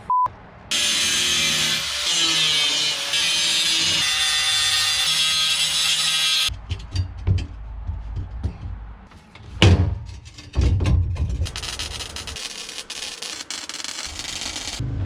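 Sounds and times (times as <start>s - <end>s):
steel frame parts clanking: 6.5s - 12.7s.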